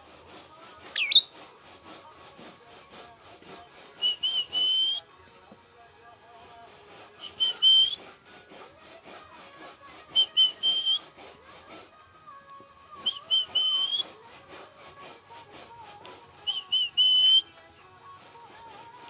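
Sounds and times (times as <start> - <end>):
lovebird chattering trill: 1.0 - 1.3
lovebird whistled phrase: 1.0 - 1.3, 4.0 - 5.0, 7.2 - 8.0, 10.1 - 11.0, 13.0 - 14.1, 16.4 - 17.5.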